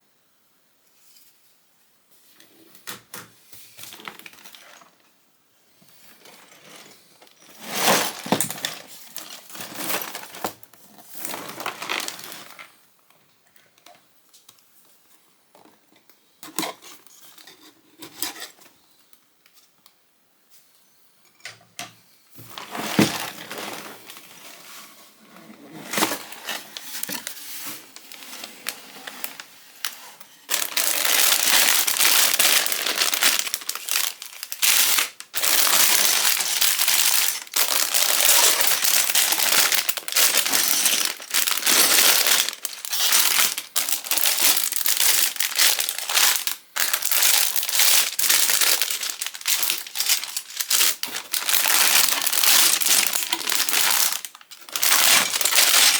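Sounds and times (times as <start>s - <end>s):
plastic bags crinkling: 3.8s - 5.1s, 6.0s - 12.8s, 22.4s - 55.9s
plastic pieces clattering: 6.1s - 12.7s, 22.5s - 24.5s, 25.8s - 55.9s.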